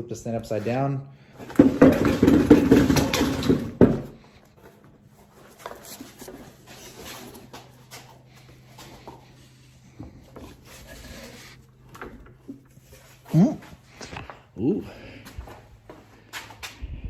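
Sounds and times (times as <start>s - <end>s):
wood knocking and scraping: 1.4s - 4.3s.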